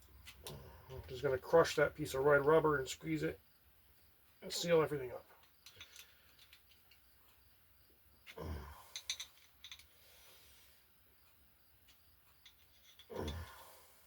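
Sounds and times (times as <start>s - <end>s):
heavy exhales of effort: 8.4s - 9.0s, 13.1s - 14.0s.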